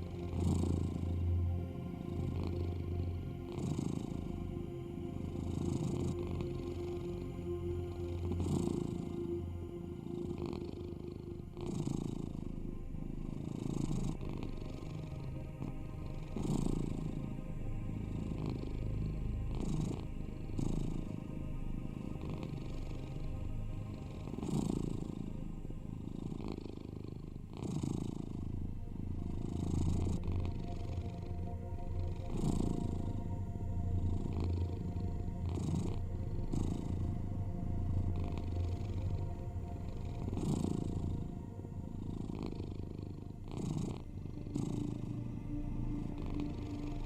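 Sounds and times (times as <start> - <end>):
cat purring: 0.0 - 12.6, 13.2 - 17.2, 18.1 - 21.1, 22.0 - 23.1, 24.0 - 47.0.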